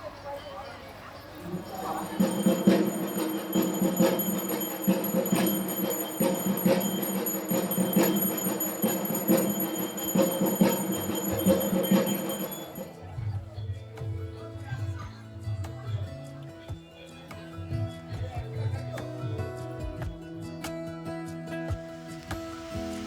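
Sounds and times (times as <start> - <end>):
music with bell-like tones: 1.4 - 14.1.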